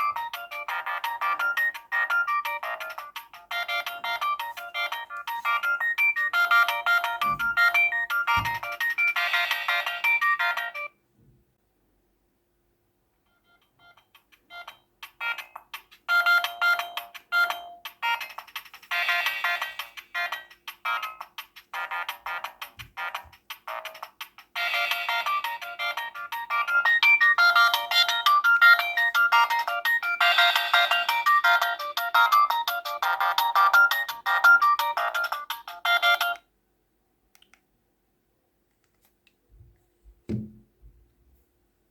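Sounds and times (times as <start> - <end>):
phone ringtone melody: 0.0 - 10.9, 13.3 - 18.3, 18.9 - 21.2, 24.6 - 36.4
short low thump: 40.3 - 40.7.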